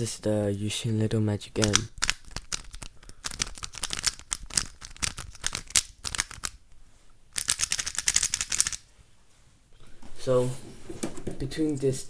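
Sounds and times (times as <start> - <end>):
puzzle cube clacking: 1.5 - 6.6, 7.3 - 8.9.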